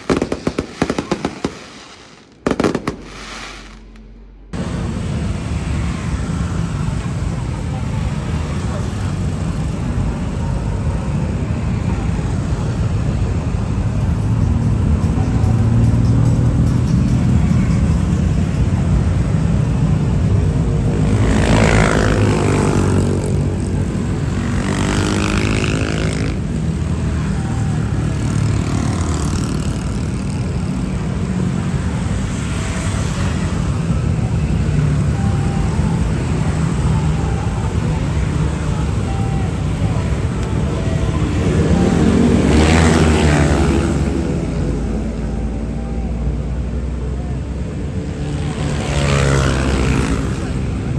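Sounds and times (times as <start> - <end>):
vehicle passing close: 0.0 - 6.9
road traffic rumble: 0.0 - 50.9.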